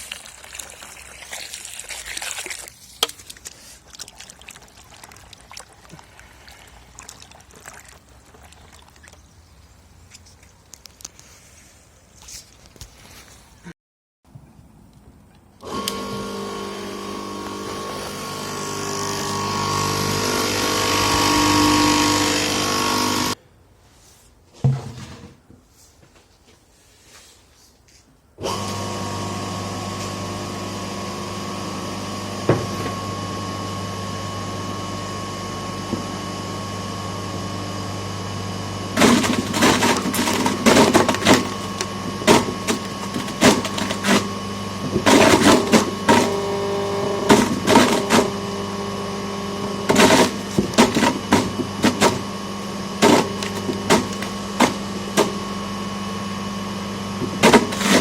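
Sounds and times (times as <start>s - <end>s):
crusher grinding: 15.6s - 23.4s, 38.6s - 58.0s
electric motor humming: 15.6s - 23.4s, 28.4s - 58.0s.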